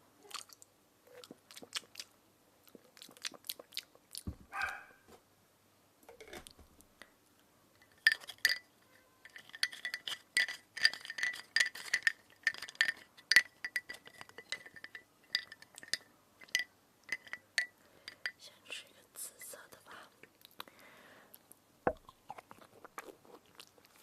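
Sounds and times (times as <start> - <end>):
spoon clicking against teeth: 9.3 - 18.4.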